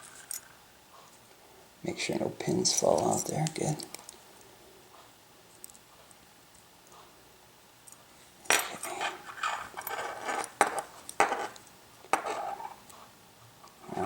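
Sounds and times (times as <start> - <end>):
metal padlock parts clattering: 8.5 - 10.6.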